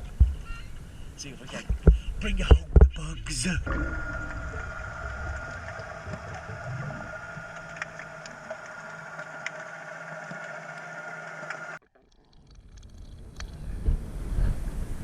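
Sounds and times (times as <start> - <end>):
motorboat engine drone: 3.6 - 11.8.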